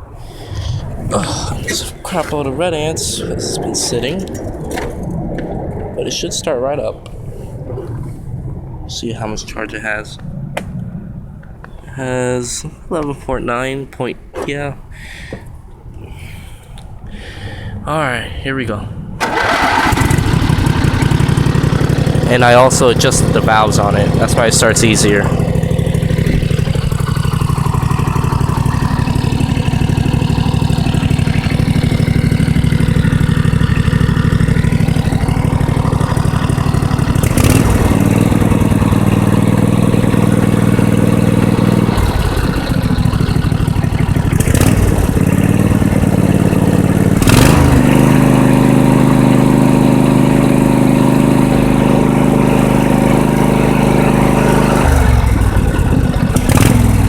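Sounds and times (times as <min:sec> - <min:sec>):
riding mower engine running: 0:19.2 - 0:57.0.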